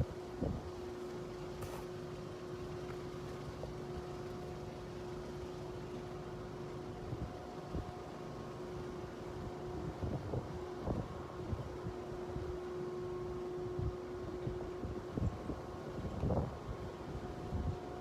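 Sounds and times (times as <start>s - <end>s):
wind buffeting microphone: 0.0s - 0.8s, 13.7s - 17.9s
steady low hum: 0.0s - 18.0s.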